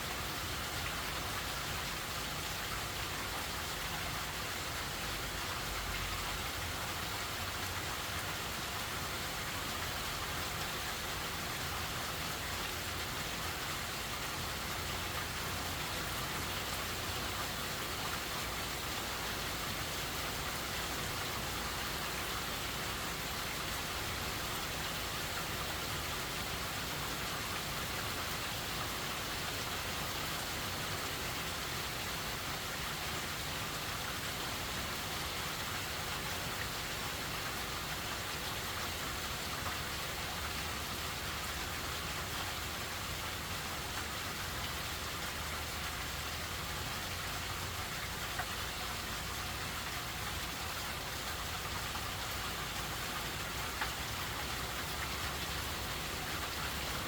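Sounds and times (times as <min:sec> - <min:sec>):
heavy rain pattering: 0:00.0 - 0:57.0.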